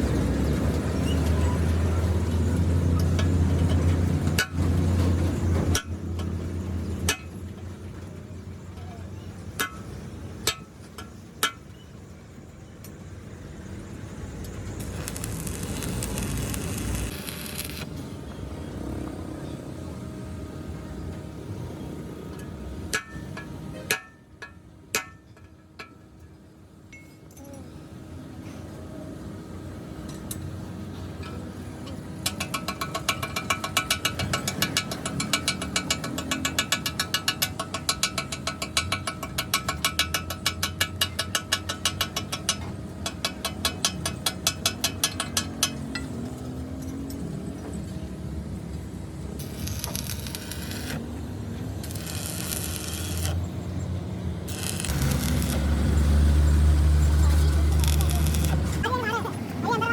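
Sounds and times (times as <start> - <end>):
low workshop din: 0.4 - 59.9
ringing metallic clinks: 26.9 - 27.5.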